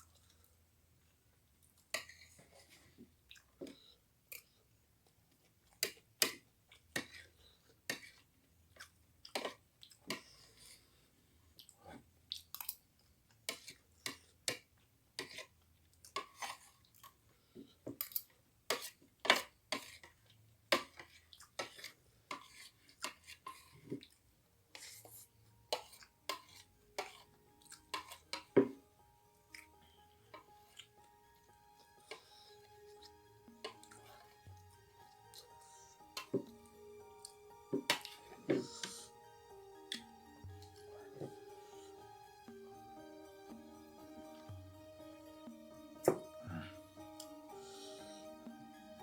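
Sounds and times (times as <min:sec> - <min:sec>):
chewing fried rice: 0:01.5 - 0:39.2
spoon clinking on a plate: 0:27.9 - 0:28.7.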